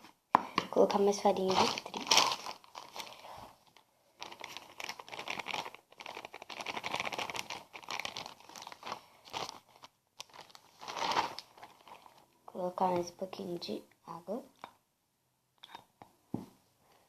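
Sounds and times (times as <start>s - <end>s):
flour package crinkling: 1.2s - 12.3s.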